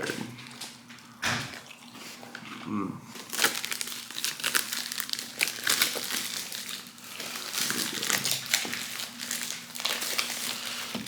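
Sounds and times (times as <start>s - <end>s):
plastic packaging crinkling: 3.1s - 11.0s.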